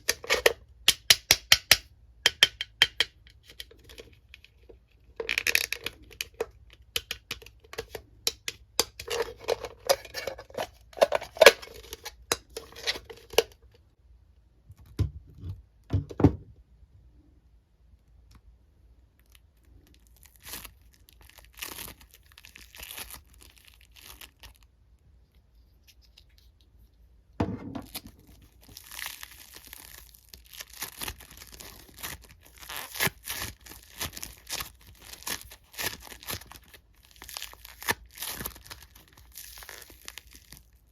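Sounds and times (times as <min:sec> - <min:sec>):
crackling foam toy: 0:19.2 - 0:26.5, 0:27.9 - 0:40.9.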